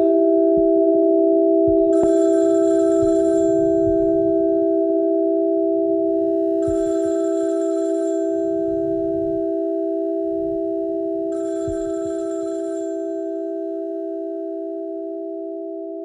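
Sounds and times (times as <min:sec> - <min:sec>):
soft low thuds: 0:00.5 - 0:00.9, 0:01.6 - 0:02.2, 0:02.9 - 0:07.1, 0:08.4 - 0:11.9.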